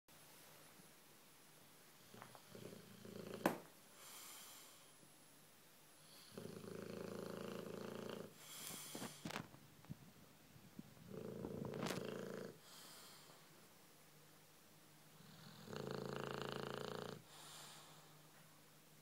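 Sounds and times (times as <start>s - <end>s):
breathy hiss: 1.9s - 5.2s, 5.9s - 9.4s, 11.1s - 13.8s, 15.1s - 18.5s
dog snoring: 2.0s - 3.6s, 6.1s - 8.7s, 11.0s - 12.9s, 15.2s - 17.8s
dog snorting: 6.3s - 8.4s, 11.0s - 12.6s.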